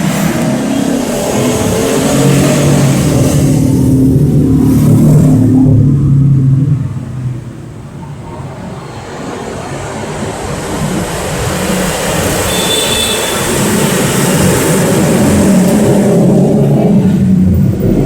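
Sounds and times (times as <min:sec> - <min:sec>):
diesel engine running: 0:00.0 - 0:12.5.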